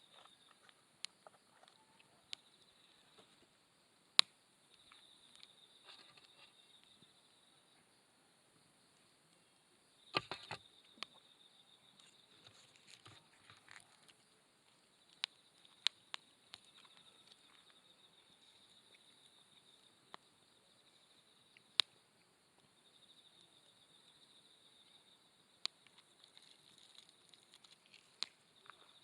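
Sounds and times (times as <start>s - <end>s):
insects trilling: 0.0s - 29.0s
campfire crackling and popping: 12.5s - 17.9s, 25.6s - 29.0s.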